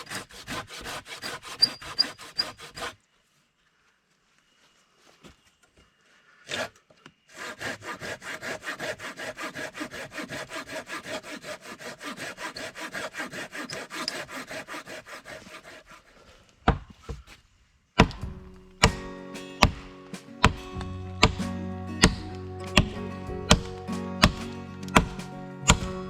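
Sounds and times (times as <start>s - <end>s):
hand saw cutting timber: 0.0s - 3.0s, 6.4s - 17.4s, 18.0s - 26.0s
sharp knock: 18.0s - 20.6s.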